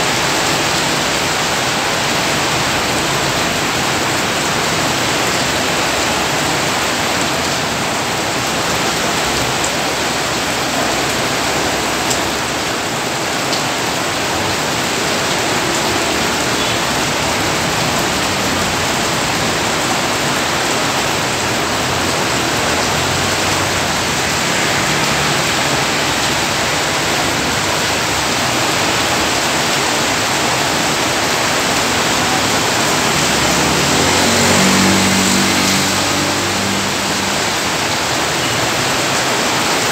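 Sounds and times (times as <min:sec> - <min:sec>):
heavy rain: 0:00.0 - 0:39.9
vehicle engine hum: 0:30.8 - 0:38.2.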